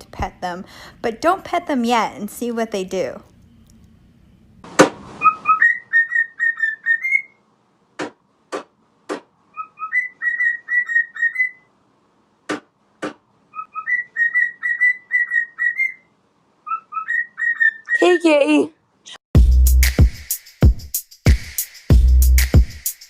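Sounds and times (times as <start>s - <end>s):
parrot whistling a tune: 5.2s - 7.4s, 9.5s - 11.7s, 13.5s - 18.0s.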